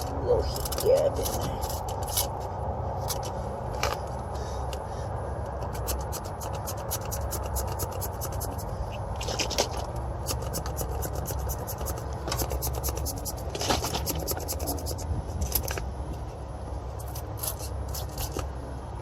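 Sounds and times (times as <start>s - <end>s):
steady low rumble: 0.0s - 19.0s
hands scraping copper pipe: 5.6s - 15.8s.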